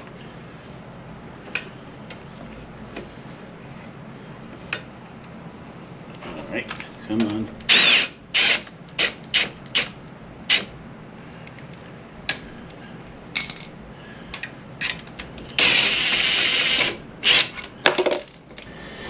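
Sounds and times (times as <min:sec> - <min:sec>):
metal parts clinking and knocking: 0:12.6 - 0:13.8, 0:17.5 - 0:18.7.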